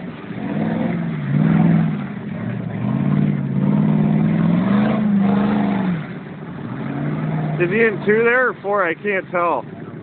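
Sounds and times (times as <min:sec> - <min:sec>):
truck engine revving hard: 0:00.0 - 0:08.5.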